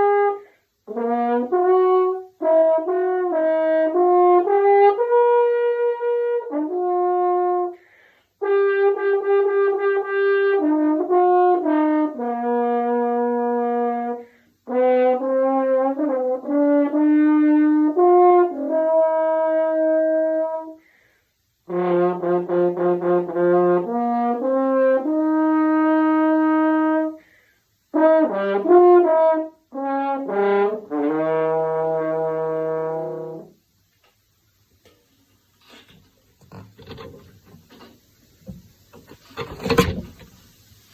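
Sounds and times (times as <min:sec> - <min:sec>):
french horn melody: 0:00.0 - 0:07.8, 0:08.4 - 0:20.8, 0:21.6 - 0:27.2, 0:27.9 - 0:33.7, 0:35.6 - 0:40.4.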